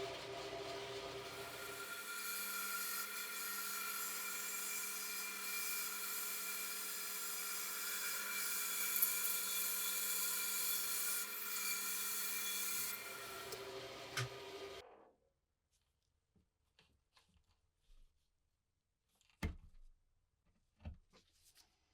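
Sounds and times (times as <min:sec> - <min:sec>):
power tool grinding: 0:00.0 - 0:14.8.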